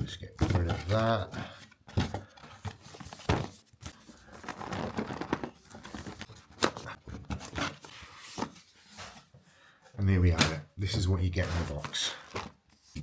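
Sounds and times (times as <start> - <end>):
packaging rustling and crinkling: 2.0 - 9.2, 11.4 - 13.0.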